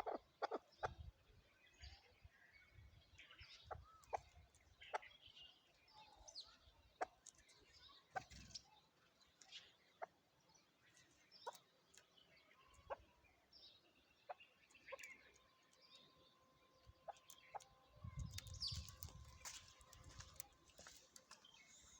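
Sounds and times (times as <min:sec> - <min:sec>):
partridge calling: 0:00.0 - 0:01.1.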